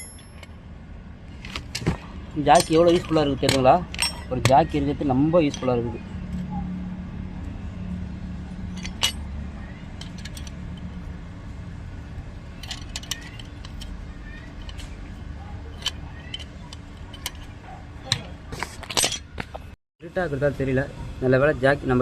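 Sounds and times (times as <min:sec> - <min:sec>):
light metallic clinks: 0:00.0 - 0:00.5, 0:01.8 - 0:04.8, 0:08.5 - 0:11.0.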